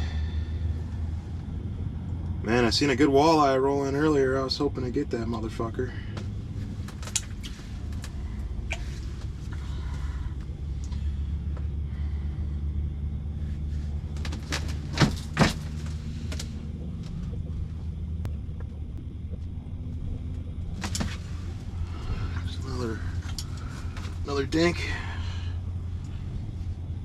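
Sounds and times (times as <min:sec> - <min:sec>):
faint hum: 0:00.0 - 0:27.0
steady low rumble: 0:00.0 - 0:27.0.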